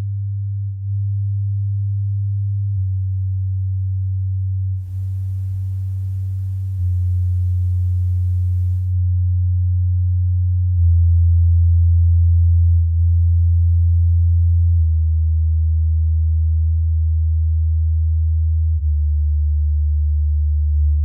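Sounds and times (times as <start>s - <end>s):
faint hiss: 4.8s - 9.0s
low bass test tones: 4.8s - 21.0s.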